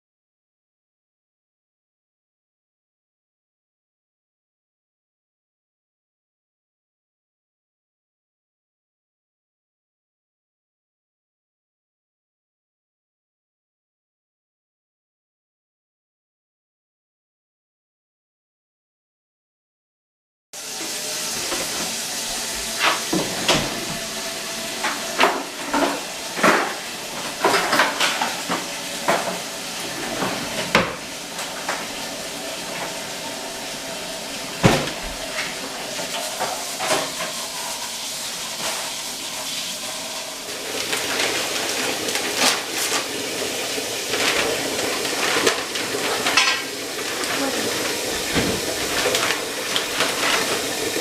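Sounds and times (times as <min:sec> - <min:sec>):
pots and pans clattering: 0:20.7 - 0:33.3, 0:34.4 - 0:51.0.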